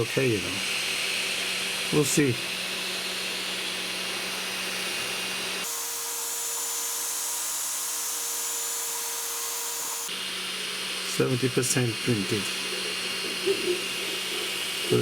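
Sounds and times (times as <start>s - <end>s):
three d printer running: 10.8s - 15.0s.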